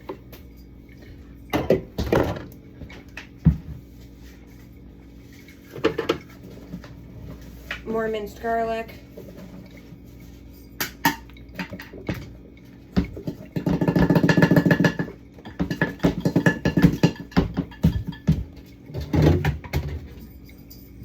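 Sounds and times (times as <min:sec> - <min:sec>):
glass jars and bottles clinking: 0:10.7 - 0:21.0.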